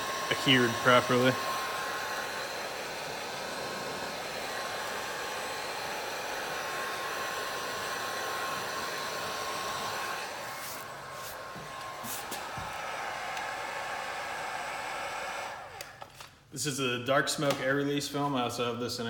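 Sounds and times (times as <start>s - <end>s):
heat gun blowing: 0.0s - 16.3s.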